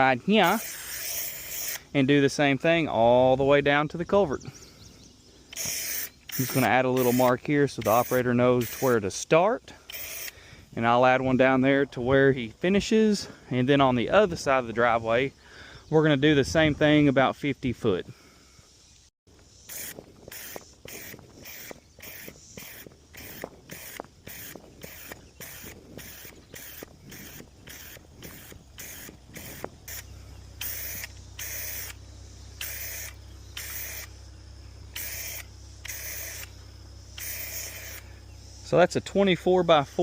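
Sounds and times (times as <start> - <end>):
spray paint hissing: 0.4 - 1.9, 5.5 - 9.0, 9.9 - 10.4, 19.5 - 34.2, 34.9 - 38.7
low steady hum: 26.3 - 40.0.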